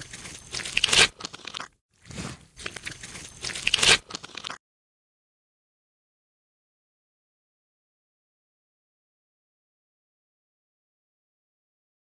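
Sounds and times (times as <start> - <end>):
dense crunching and crackling: 0.0 - 4.6.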